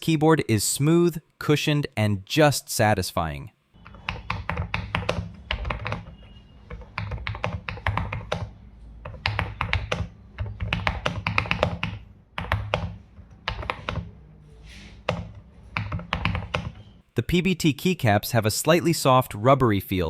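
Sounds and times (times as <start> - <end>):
mechanical keyboard typing: 3.8 - 14.2, 15.0 - 16.8.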